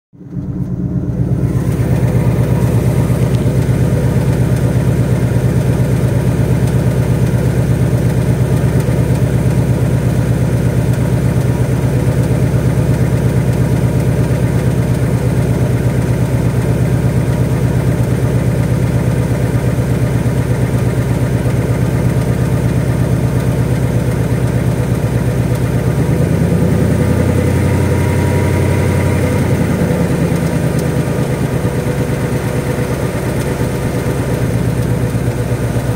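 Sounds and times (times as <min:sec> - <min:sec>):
car engine idling: 0:00.2 - 0:35.9
engine ticking: 0:00.2 - 0:35.9.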